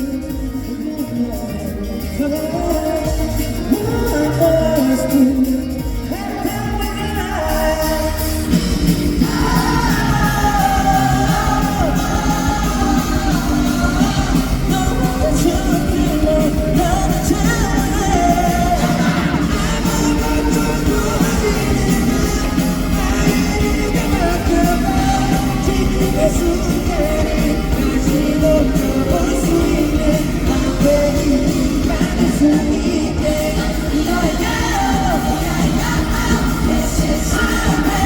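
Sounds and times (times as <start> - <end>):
lead vocals singing: 0.0 - 38.0
live pop-rock band playing: 0.0 - 38.0.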